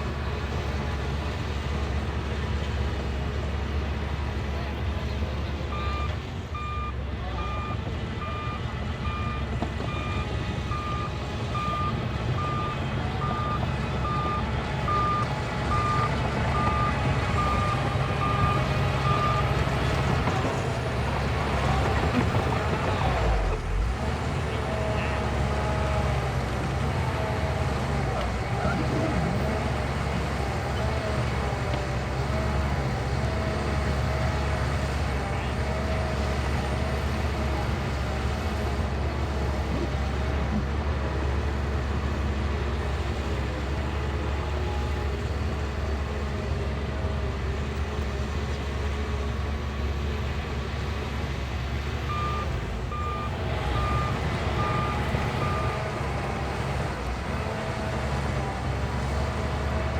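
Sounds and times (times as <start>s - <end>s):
bulldozer diesel engine: 0.0s - 59.9s
reversing alarm beeps: 5.7s - 19.6s, 52.1s - 55.9s.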